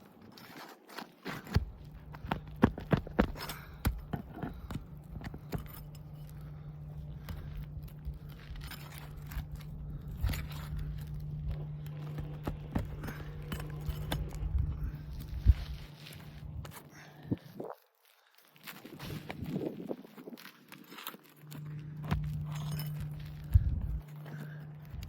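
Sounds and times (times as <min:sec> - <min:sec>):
steady low hum: 0:00.0 - 0:25.0
tool scraping under roof shingles: 0:00.0 - 0:25.0.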